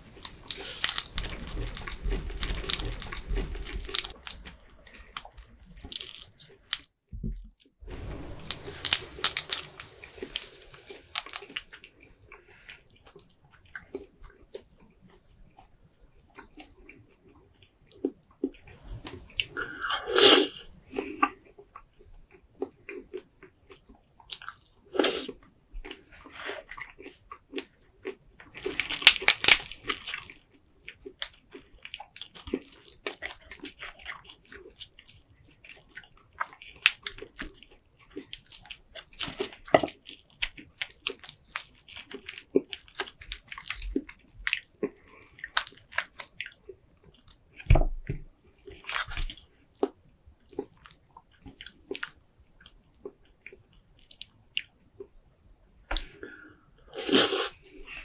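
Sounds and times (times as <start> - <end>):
chewing and biting: 0.0 - 6.9, 8.2 - 14.7, 22.6 - 47.7.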